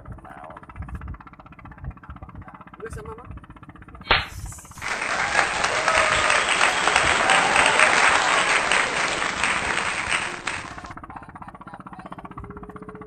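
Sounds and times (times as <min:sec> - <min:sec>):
low rapidly pulsing hum: 0:00.0 - 0:13.0
people cheering: 0:04.1 - 0:11.0
loud applause: 0:04.8 - 0:11.0.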